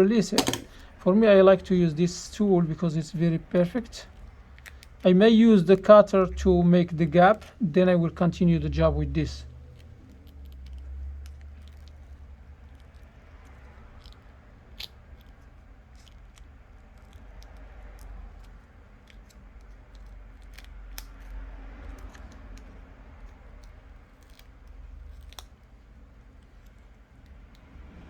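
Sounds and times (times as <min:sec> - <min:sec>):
tool clicking and scratching: 0:00.2 - 0:00.9, 0:09.4 - 0:27.8.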